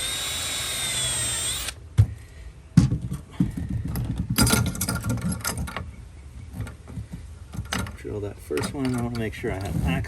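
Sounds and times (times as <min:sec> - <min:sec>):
power drill running: 0:00.0 - 0:01.8
sharp knocks and handling clatter: 0:02.8 - 0:09.8.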